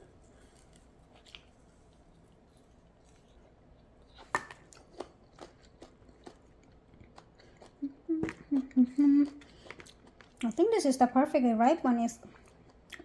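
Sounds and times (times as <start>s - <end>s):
person humming mm: 7.8s - 9.4s.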